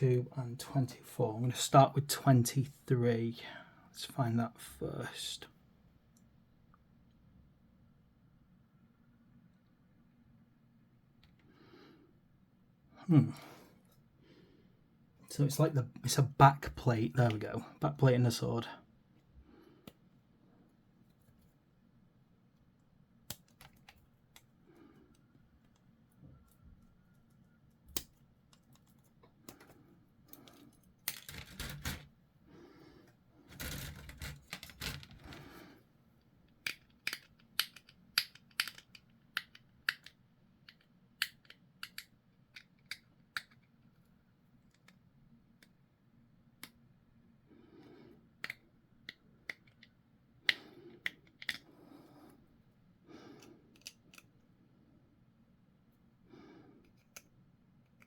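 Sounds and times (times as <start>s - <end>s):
plastic parts rustling: 27.1s - 32.1s, 33.5s - 35.6s
plastic pieces clicking: 27.8s - 32.1s, 33.5s - 35.5s, 36.5s - 43.7s, 48.4s - 51.7s.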